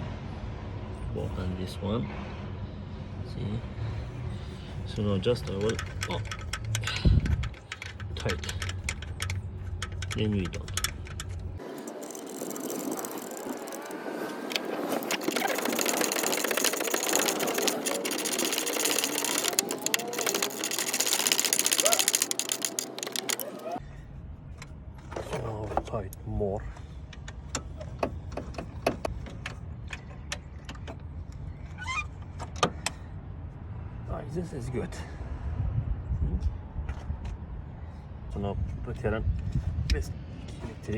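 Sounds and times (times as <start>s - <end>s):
ratchet wrench clicking: 5.4s - 14.0s, 14.6s - 23.8s.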